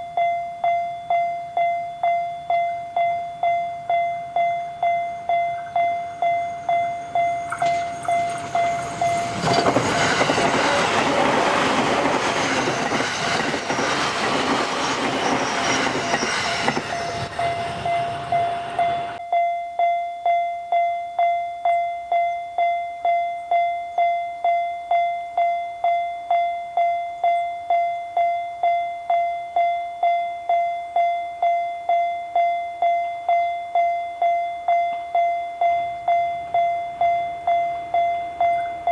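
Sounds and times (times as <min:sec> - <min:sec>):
electric train rumbling: 0:00.0 - 0:19.2, 0:34.1 - 0:38.9
level-crossing alarm ringing: 0:00.0 - 0:19.2, 0:33.1 - 0:38.9.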